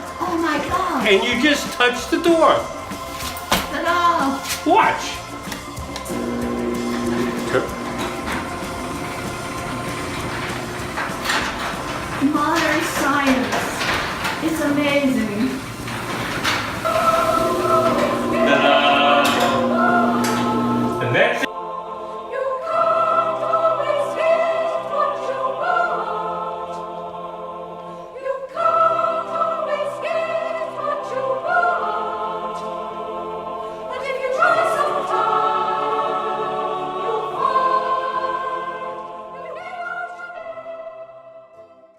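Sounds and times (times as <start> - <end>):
choir singing sustained chords: 5.2 - 12.7, 15.8 - 41.9
orchestra playing: 6.0 - 12.7, 15.9 - 21.5.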